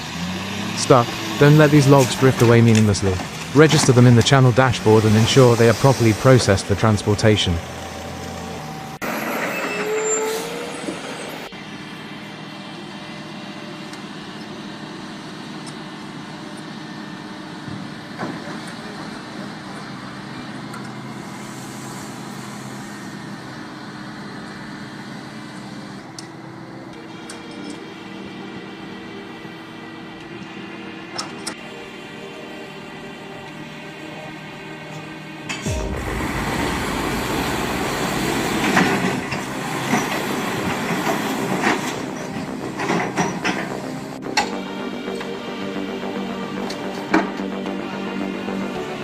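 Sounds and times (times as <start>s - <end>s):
heavy machine engine running: 0.0s - 49.0s
short squeal: 7.8s - 11.5s.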